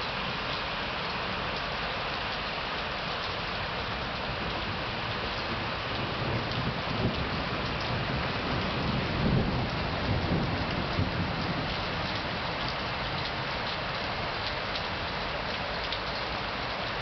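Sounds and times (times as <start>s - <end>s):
steady rain falling: 0.0s - 17.0s
thunder rumbling low: 4.3s - 13.3s.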